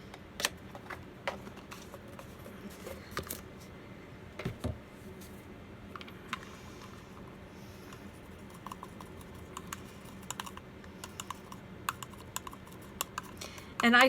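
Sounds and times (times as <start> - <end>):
paintbrush clicking and tapping: 7.9 - 14.0.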